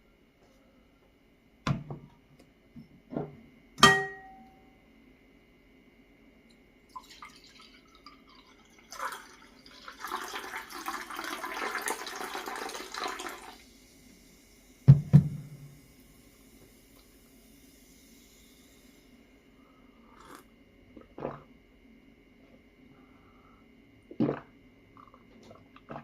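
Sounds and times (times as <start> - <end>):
liquid pouring into a cup: 6.9 - 13.6.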